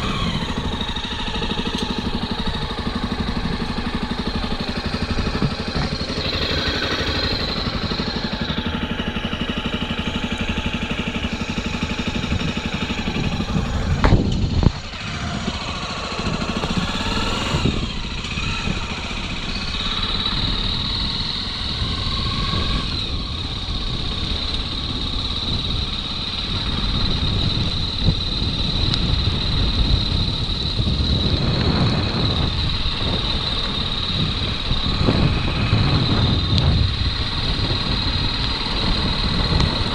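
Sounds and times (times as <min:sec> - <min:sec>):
motorcycle engine revving: 0:00.0 - 0:39.9
steady high whine: 0:00.0 - 0:39.9
loud bump: 0:12.2 - 0:14.9.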